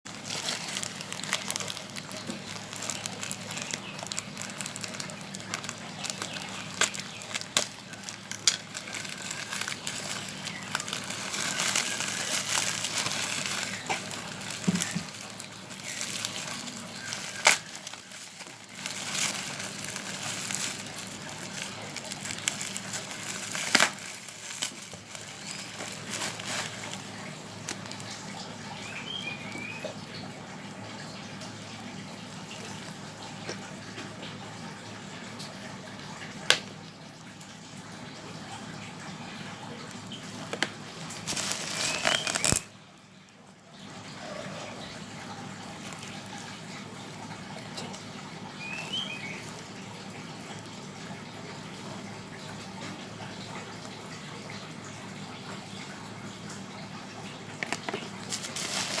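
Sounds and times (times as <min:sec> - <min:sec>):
wrapping crinkling and rustling: 0:00.1 - 0:29.6, 0:39.8 - 0:42.8, 0:44.1 - 0:50.9, 0:57.6 - 0:59.0.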